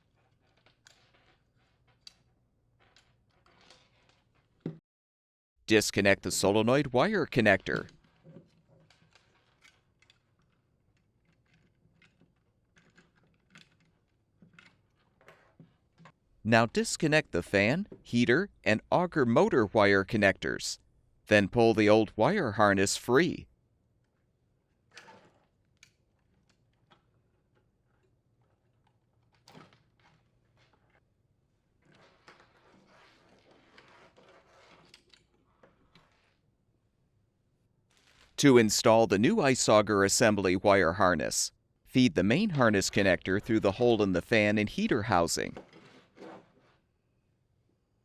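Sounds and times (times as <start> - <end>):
rustle and scrape of plastic: 31.8 - 36.4.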